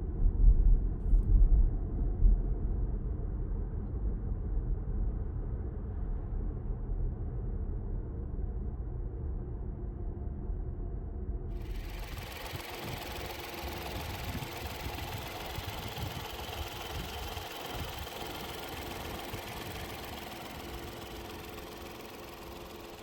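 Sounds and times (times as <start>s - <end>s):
car engine rumble: 11.6s - 23.0s.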